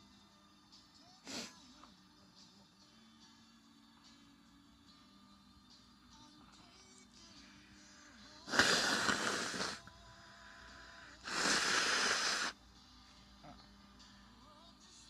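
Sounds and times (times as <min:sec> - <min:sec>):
faint background music: 0:00.0 - 0:15.0
person blowing nose: 0:01.3 - 0:01.6, 0:08.5 - 0:09.9, 0:11.1 - 0:12.6.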